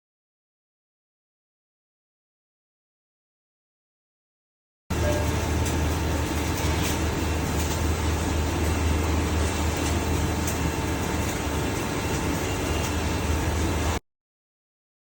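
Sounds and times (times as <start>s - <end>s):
milling machine humming and whirring: 4.9s - 14.0s.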